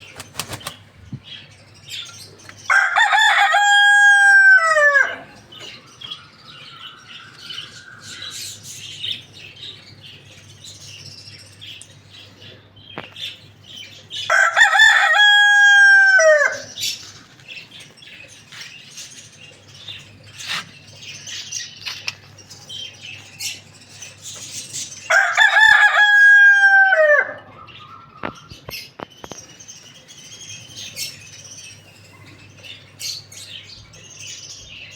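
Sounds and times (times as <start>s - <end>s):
rooster crowing: 2.7s - 5.4s, 14.3s - 16.8s, 25.1s - 27.5s.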